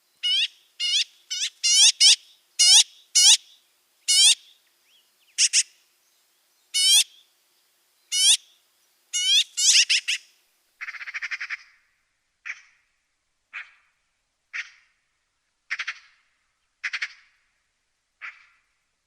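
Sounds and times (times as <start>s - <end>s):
magpie harsh calls: 0.2s - 4.5s, 5.4s - 5.8s, 6.8s - 7.2s, 8.1s - 8.5s, 9.1s - 11.8s, 14.5s - 14.9s, 15.7s - 16.2s, 16.8s - 17.4s, 18.2s - 18.6s.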